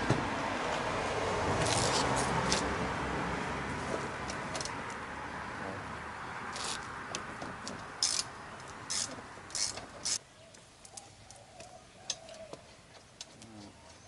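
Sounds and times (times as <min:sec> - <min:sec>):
ratchet wrench clicking: 0:08.0 - 0:08.3, 0:08.9 - 0:10.2.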